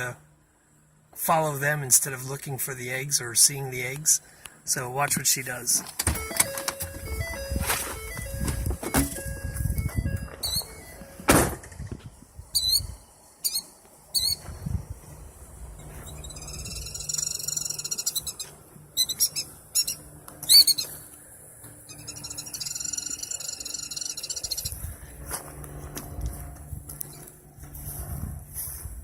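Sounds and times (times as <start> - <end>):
bird trilling: 10.4 - 11.0, 12.5 - 14.5, 16.0 - 21.1, 21.8 - 24.9
bird alarm calls: 12.6 - 14.5, 16.1 - 21.1, 21.9 - 24.8.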